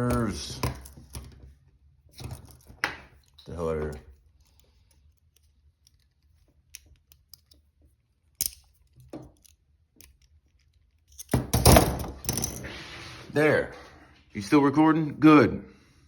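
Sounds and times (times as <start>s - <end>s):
handcuffs rattling and jangling: 0.2s - 1.4s, 2.1s - 7.6s, 8.3s - 12.7s
metallic clicks of lock picking: 2.1s - 7.6s, 8.3s - 11.4s.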